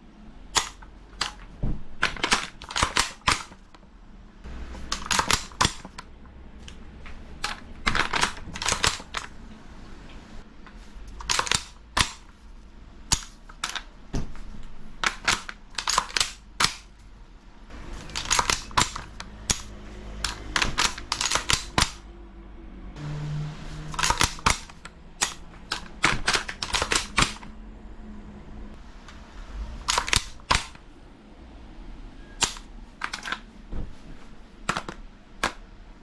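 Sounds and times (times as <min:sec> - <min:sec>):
airsoft gun firing sharp cracks: 0:02.1 - 0:03.6.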